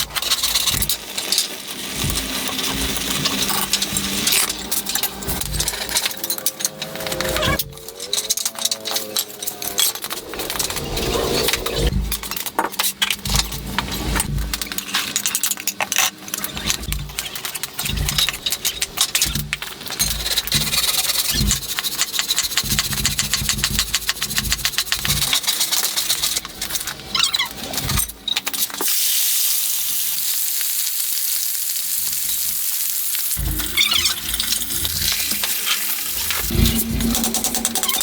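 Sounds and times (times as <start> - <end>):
food sizzling in a pan: 28.8 - 36.4.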